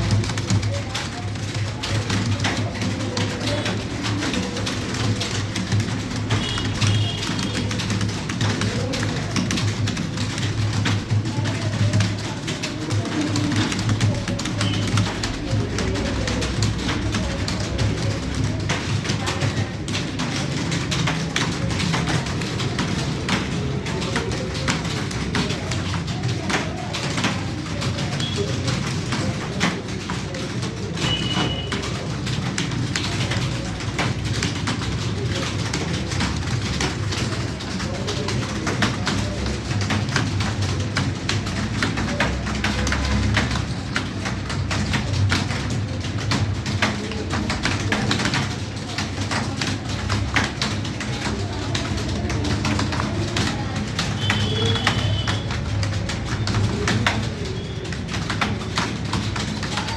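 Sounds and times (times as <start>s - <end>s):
fast typing on keyboard: 0.0s - 59.9s.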